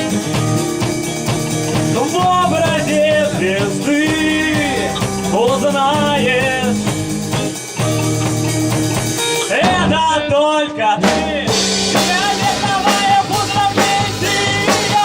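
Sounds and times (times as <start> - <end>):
bass guitar: 0.0 - 15.0
guitar: 0.0 - 15.0
steady drum beat: 0.0 - 15.0
person singing: 1.9 - 6.9, 9.4 - 15.0.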